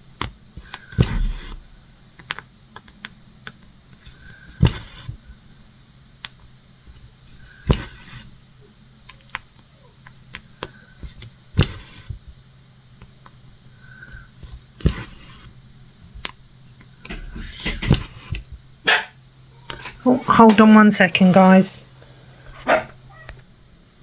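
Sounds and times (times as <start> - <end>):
small clicks and rustles: 0.2 - 5.4.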